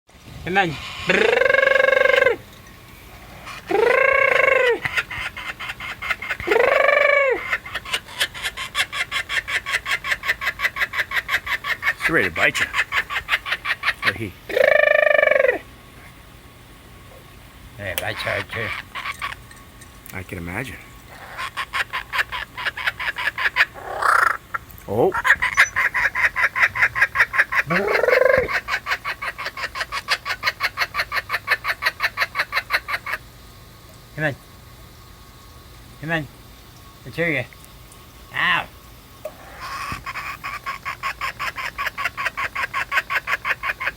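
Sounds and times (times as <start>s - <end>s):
bird calling: 0.9s - 2.6s, 3.3s - 15.7s, 18.0s - 19.8s, 20.6s - 33.3s, 38.4s - 43.9s
chicken squawk: 1.0s - 2.4s, 3.4s - 15.7s, 18.2s - 19.5s, 21.1s - 33.2s, 39.3s - 43.9s
chicken clucking: 25.2s - 33.0s, 39.6s - 43.9s.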